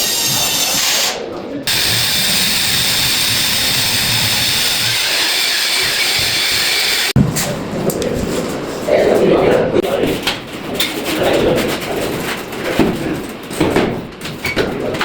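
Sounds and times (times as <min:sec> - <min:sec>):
power tool running: 0:00.0 - 0:07.2.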